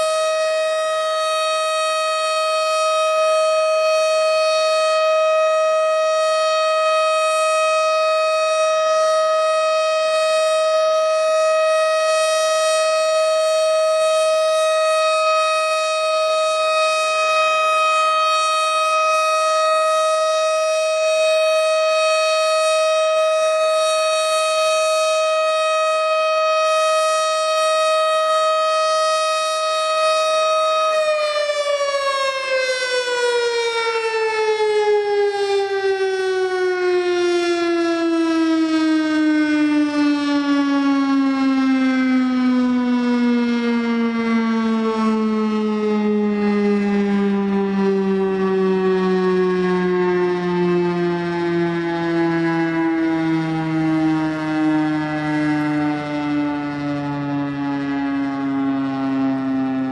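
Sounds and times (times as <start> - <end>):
siren sliding down in pitch: 0.0 - 59.9.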